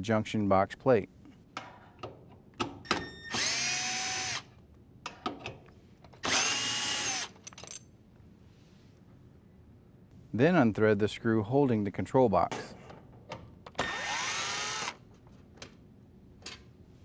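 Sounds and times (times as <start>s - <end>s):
drill driver running: 3.3s - 4.5s, 6.2s - 7.4s, 13.8s - 15.0s.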